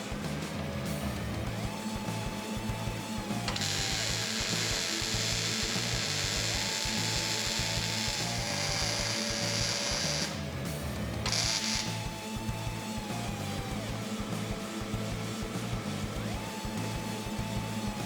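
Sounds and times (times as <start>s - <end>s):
background music with beat: 0.0s - 18.0s
power tool running: 2.8s - 10.6s, 11.2s - 12.5s.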